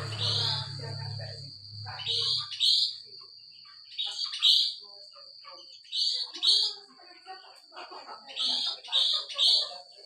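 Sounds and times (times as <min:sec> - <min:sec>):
bulbul calling: 0:00.0 - 0:04.9.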